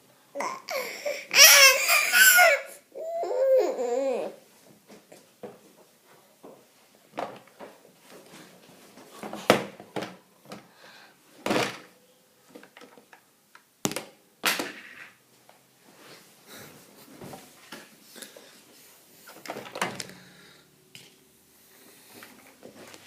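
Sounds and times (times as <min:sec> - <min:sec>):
faint handling noises: 0:04.5 - 0:10.7.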